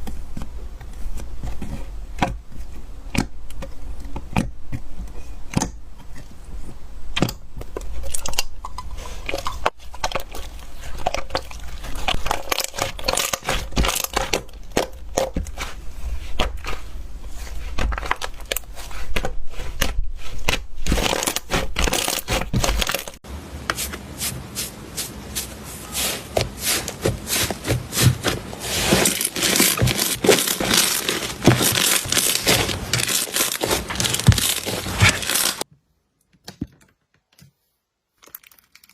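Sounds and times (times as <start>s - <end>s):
slime crackling and popping: 10.0s - 15.5s, 27.6s - 35.6s.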